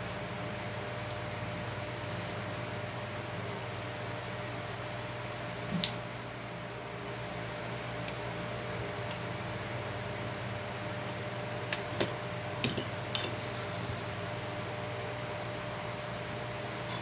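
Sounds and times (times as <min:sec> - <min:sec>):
steady hum: 0:12.6 - 0:17.0.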